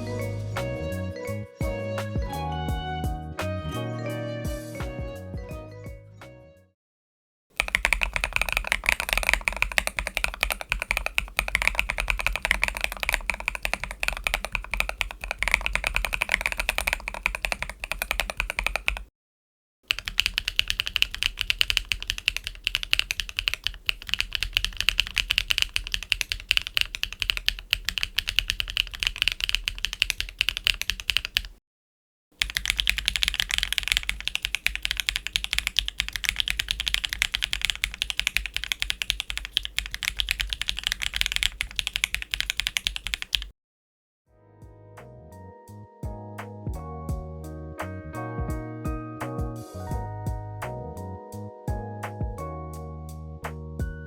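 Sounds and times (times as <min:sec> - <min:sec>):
mechanical keyboard typing: 0:07.6 - 0:19.1, 0:19.9 - 0:31.6, 0:32.4 - 0:43.5.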